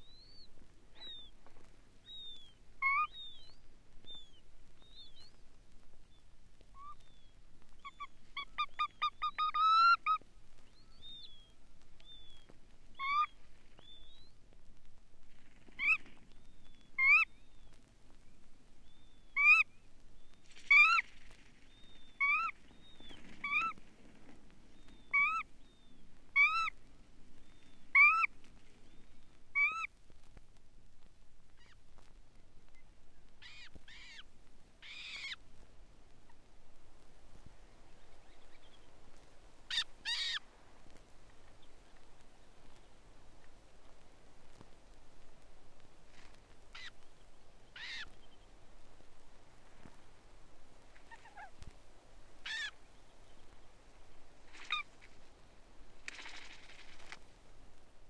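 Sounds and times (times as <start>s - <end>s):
bird nasal call notes: 2.0s - 5.2s, 47.8s - 48.3s, 52.4s - 52.8s, 54.5s - 55.0s.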